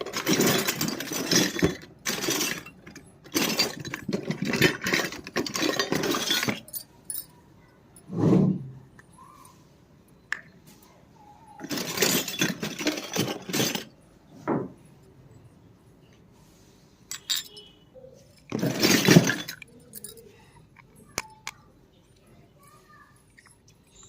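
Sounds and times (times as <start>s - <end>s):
plastic toys clattering: 0.0s - 7.3s, 11.6s - 14.1s, 17.1s - 21.8s, 22.6s - 24.0s.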